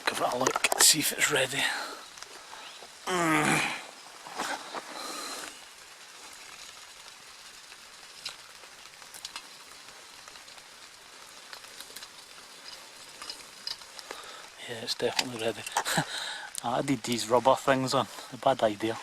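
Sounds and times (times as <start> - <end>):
rain falling: 0.0 - 19.0
light ticks: 8.2 - 14.4.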